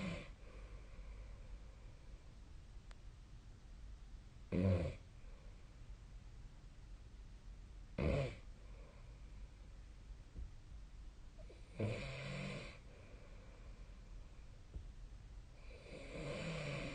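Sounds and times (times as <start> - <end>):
person snoring: 11.5 - 12.9, 15.6 - 16.9.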